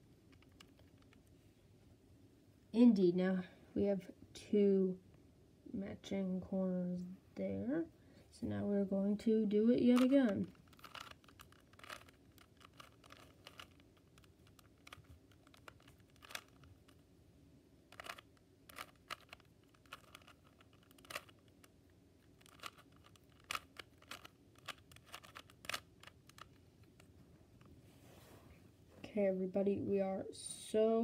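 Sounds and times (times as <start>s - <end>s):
plastic puzzle cube clicking: 0.3s - 1.2s, 9.9s - 17.0s, 17.9s - 21.7s, 22.3s - 27.1s.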